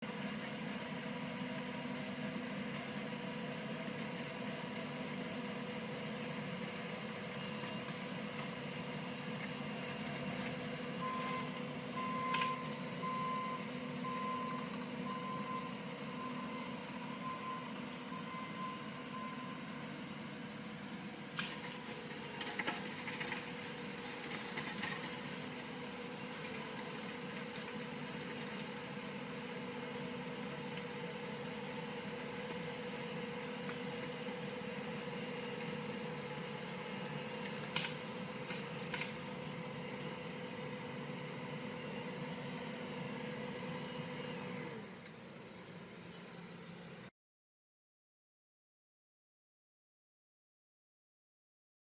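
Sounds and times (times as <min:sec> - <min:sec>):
skid steer engine running: 0:00.0 - 0:47.1
reversing alarm beeping: 0:10.9 - 0:19.9.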